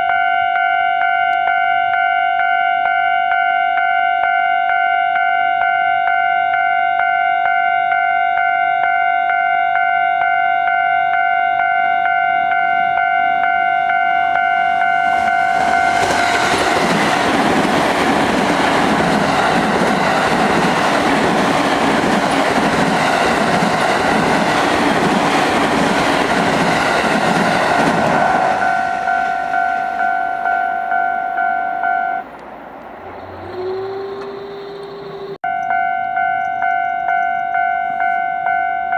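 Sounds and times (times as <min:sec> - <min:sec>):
level crossing warning bell: 0:00.0 - 0:16.4, 0:28.3 - 0:32.3, 0:35.0 - 0:38.9
train rumbling past: 0:14.2 - 0:38.2
wheels clacking over rail joints: 0:15.2 - 0:29.7.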